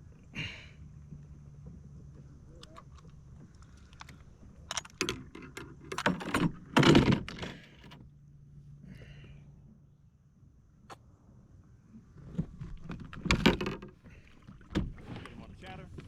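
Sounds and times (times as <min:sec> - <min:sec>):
faint low hum: 0:00.0 - 0:16.0
handling clicks and rattles: 0:02.1 - 0:08.0, 0:12.2 - 0:16.0.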